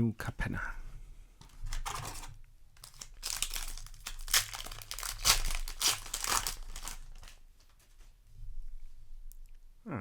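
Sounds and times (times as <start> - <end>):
foil wrapper crinkling: 1.6 - 8.0.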